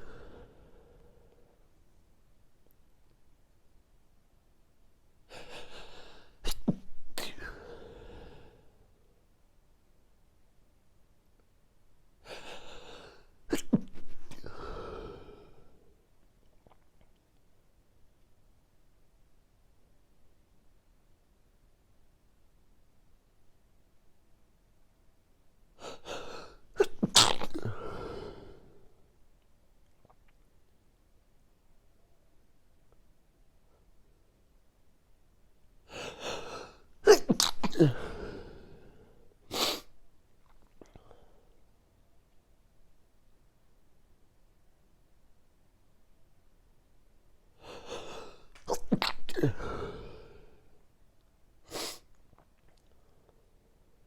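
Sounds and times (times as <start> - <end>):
person sneezing: 6.4 - 7.8, 13.5 - 14.8, 25.8 - 28.2, 36.1 - 38.4, 39.5 - 40.0, 47.7 - 50.2, 51.7 - 52.1
person gasping in-breath: 7.1 - 8.8, 14.1 - 15.8, 27.5 - 28.9, 35.9 - 39.2, 47.6 - 50.8.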